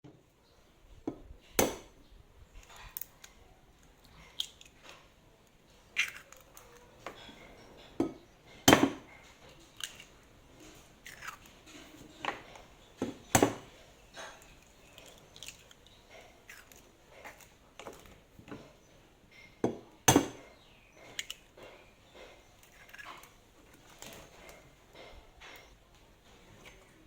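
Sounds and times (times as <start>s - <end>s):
utensils and dishes knocking: 1.1s - 2.0s, 7.0s - 9.7s, 11.7s - 14.5s, 17.2s - 23.2s.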